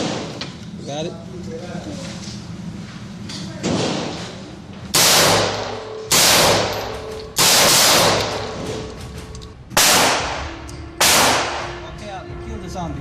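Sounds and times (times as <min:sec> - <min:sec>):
gunshots: 0:04.9 - 0:08.6, 0:09.7 - 0:11.8.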